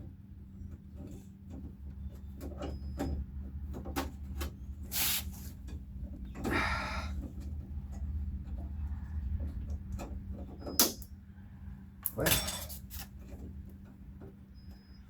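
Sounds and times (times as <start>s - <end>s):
small clicks and knocks: 7.2s - 11.1s.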